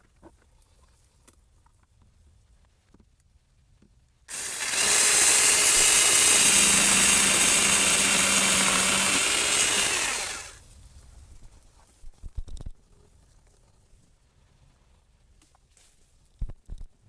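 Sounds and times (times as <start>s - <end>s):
electric chainsaw cutting branch: 4.3s - 10.6s.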